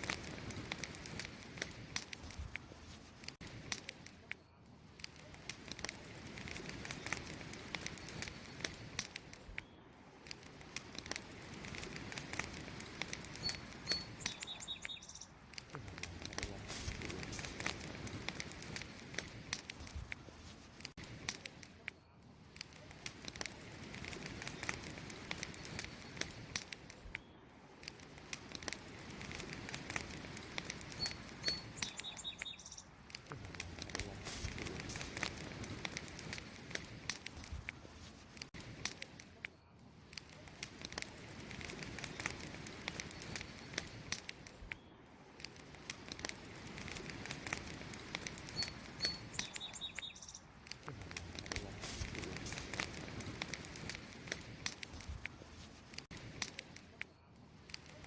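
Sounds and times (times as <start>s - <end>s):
campfire crackling and popping: 0.0s - 58.0s
high chirps: 13.3s - 15.4s, 30.8s - 33.0s, 48.4s - 50.6s.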